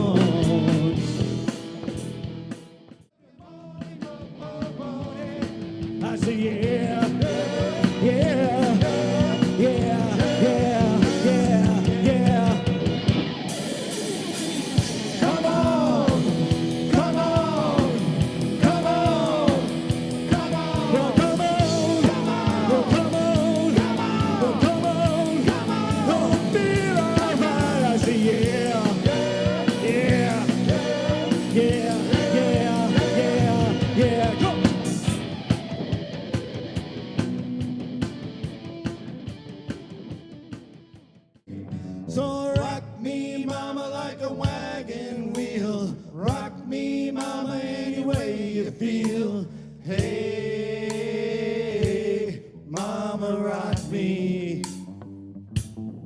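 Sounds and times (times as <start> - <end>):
rock country band music: 0.0 - 3.0, 3.8 - 42.8
sustained bass notes: 5.6 - 13.5, 14.2 - 39.3.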